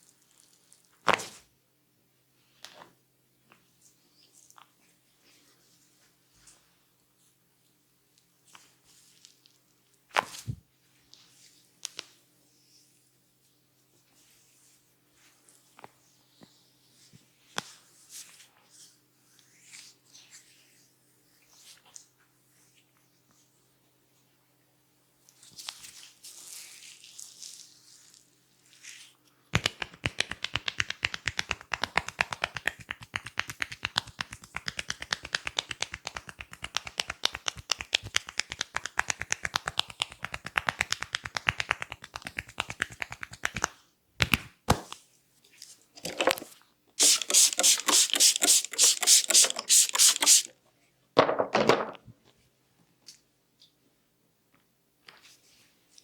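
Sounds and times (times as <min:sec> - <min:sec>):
rapid percussive massage strikes: 0:29.6 - 0:43.7, 0:47.0 - 0:50.5
soft rubbing hiss: 0:29.8 - 0:43.7, 0:47.0 - 0:50.5.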